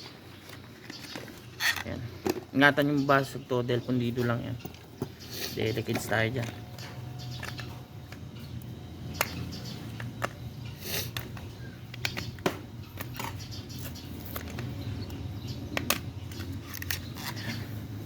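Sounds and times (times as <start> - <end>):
steady low hum: 0.0 - 18.0
small metal parts clicking: 5.9 - 8.6, 9.2 - 17.6.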